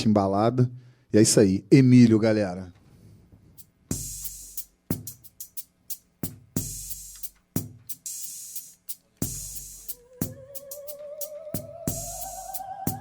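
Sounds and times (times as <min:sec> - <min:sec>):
sharp drum hits: 0:03.9 - 0:05.6, 0:06.2 - 0:08.1
kick drum and cymbal crash: 0:03.9 - 0:13.0.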